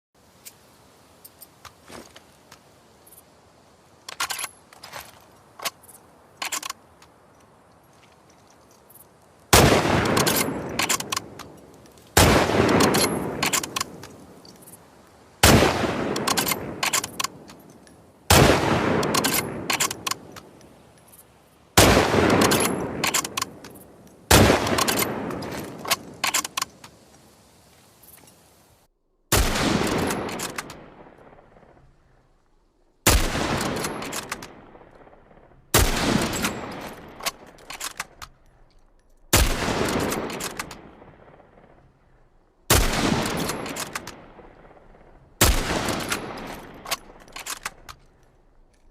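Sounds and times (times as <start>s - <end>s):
rifle shots with echo: 9.5s - 11.3s, 12.2s - 14.0s, 15.4s - 17.5s, 18.3s - 20.3s, 21.8s - 23.6s, 24.3s - 25.8s, 29.3s - 31.8s, 33.0s - 37.5s, 39.3s - 41.8s, 42.7s - 47.2s.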